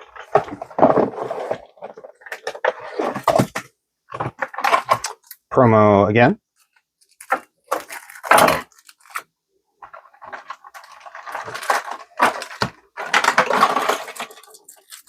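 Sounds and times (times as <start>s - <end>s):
packaging crinkling and tearing: 7.1s - 15.0s.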